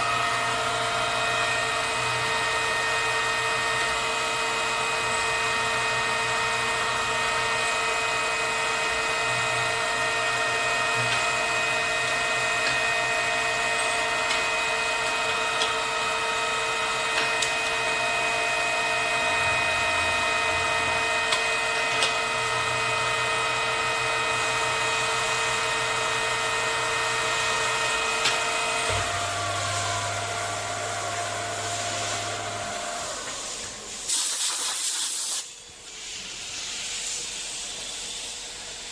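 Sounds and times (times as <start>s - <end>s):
milling machine whine: 0.0s - 34.2s
loud hiss: 34.1s - 37.5s.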